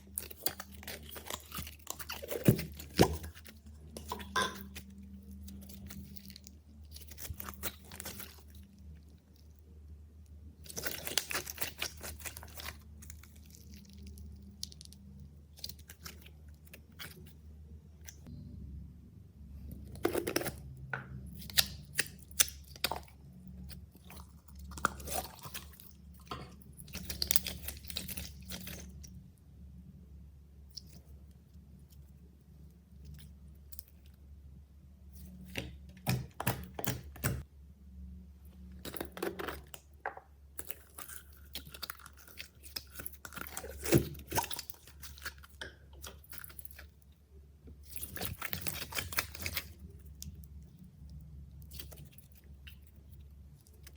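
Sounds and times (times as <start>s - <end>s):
slime squished by hand: 10.6s - 17.4s.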